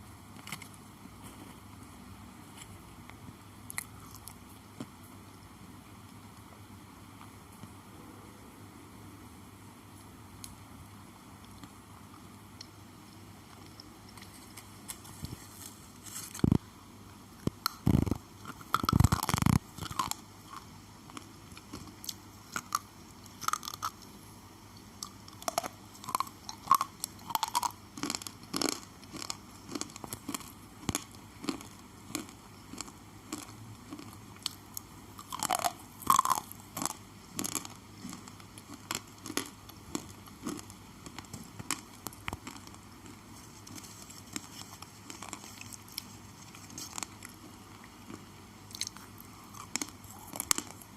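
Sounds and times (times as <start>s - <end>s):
crunching chews: 17.4s - 24.1s, 24.9s - 50.9s
slate pencils crunching snaps: 17.4s - 24.1s, 25.0s - 34.6s.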